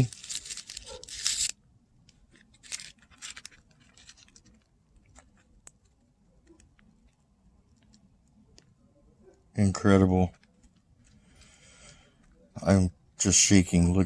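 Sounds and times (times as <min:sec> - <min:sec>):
hands rustling: 0:02.2 - 0:08.8.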